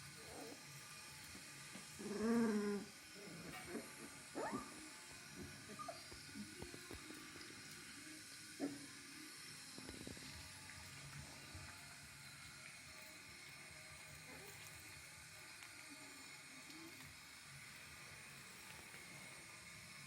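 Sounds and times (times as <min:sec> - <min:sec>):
puppies whining and squeaking: 0:03.2 - 0:04.8, 0:05.6 - 0:06.6.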